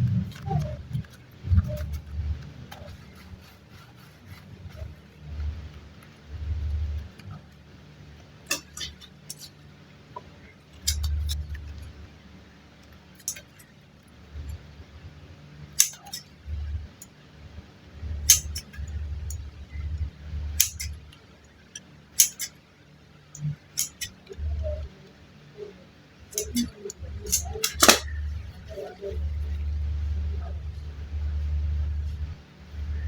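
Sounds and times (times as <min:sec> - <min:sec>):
clay clicks and crackles: 0:00.0 - 0:15.0.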